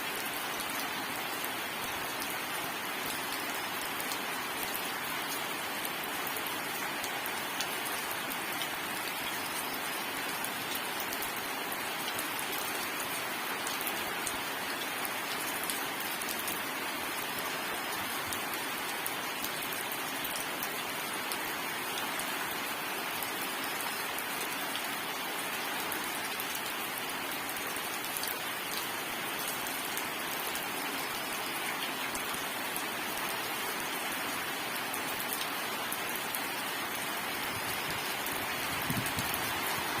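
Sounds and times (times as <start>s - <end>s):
steady rain falling: 0.0s - 40.0s.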